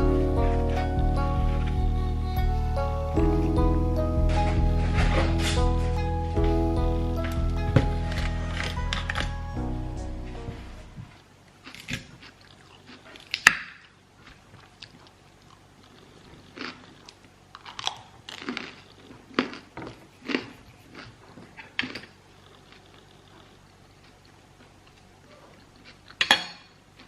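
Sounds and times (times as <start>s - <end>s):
crunchy chewing: 11.5s - 26.2s.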